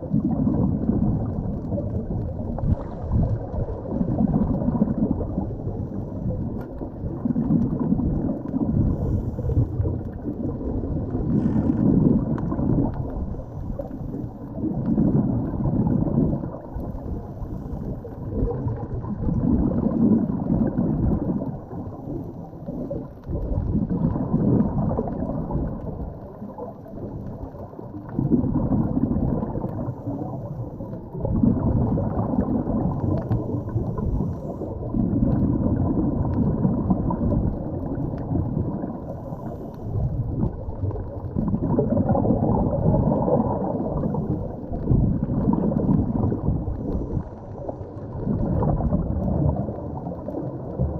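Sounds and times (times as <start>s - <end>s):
diver's exhaled bubbles gurgling: 0.0s - 50.9s
low hiss of breathing: 8.8s - 9.9s, 17.0s - 18.3s, 39.0s - 40.1s.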